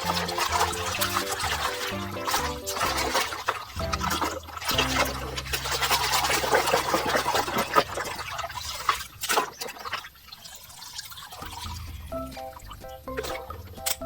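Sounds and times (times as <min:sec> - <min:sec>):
low steady hum: 0:00.0 - 0:09.2
water pouring and splashing: 0:00.0 - 0:14.0.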